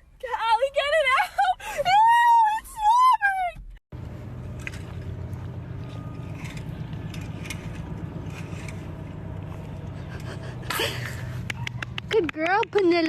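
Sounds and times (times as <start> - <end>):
engine humming: 0.0 - 13.0
faint clicks and scrapes: 4.4 - 10.4.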